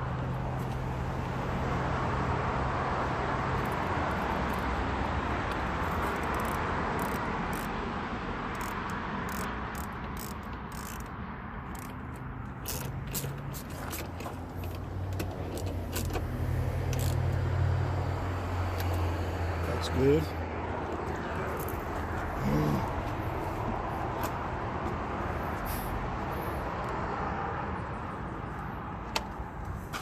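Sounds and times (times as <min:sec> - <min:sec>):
hand tools clicking and rattling: 0:08.6 - 0:16.2.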